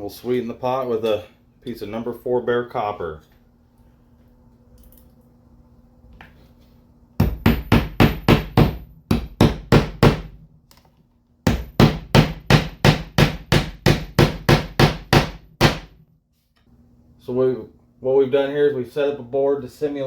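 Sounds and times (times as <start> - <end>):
hand hammer striking: 7.2 - 10.3, 11.5 - 16.0.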